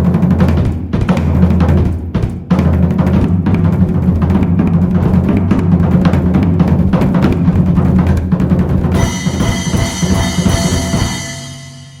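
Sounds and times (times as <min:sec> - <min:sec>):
drum-heavy music: 0:00.0 - 0:12.0
bright ringing drum hit: 0:09.0 - 0:12.0
steady bass line: 0:09.0 - 0:12.0.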